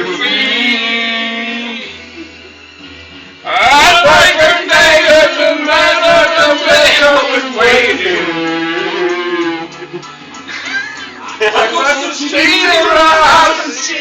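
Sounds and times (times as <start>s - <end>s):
music track with steady beat: 0.0s - 14.0s
man singing loudly: 3.4s - 9.7s, 11.6s - 14.0s.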